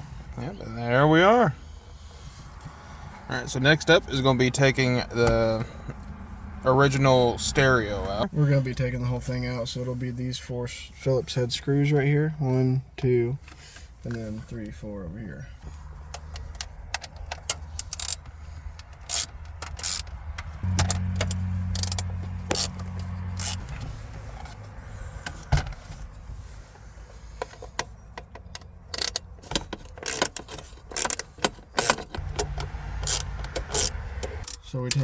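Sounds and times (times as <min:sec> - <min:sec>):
screwdriver clicking and rattling screws: 0:17.4 - 0:18.3, 0:18.9 - 0:20.2, 0:21.8 - 0:22.7, 0:23.4 - 0:23.6, 0:28.9 - 0:32.2, 0:33.0 - 0:34.6.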